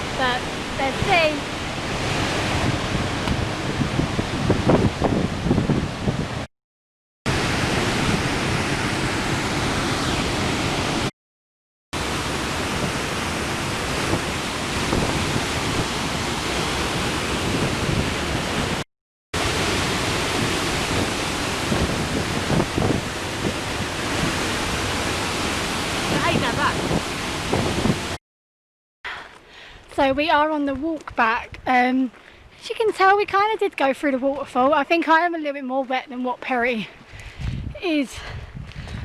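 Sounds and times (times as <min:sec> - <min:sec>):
waterfall roaring: 0:00.0 - 0:06.5, 0:07.3 - 0:11.1, 0:12.0 - 0:18.8, 0:19.4 - 0:28.2.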